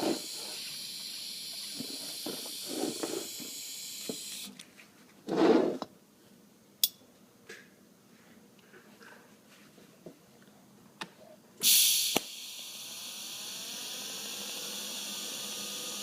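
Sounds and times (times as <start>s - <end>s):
welding arc hissing: 0.0s - 4.6s, 11.6s - 16.0s.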